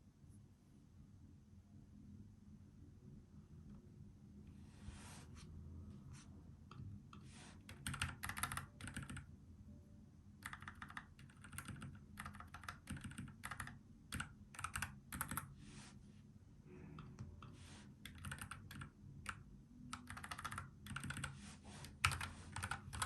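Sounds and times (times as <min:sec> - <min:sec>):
mechanical keyboard typing: 0:07.7 - 0:09.3, 0:10.4 - 0:15.5, 0:17.1 - 0:23.0.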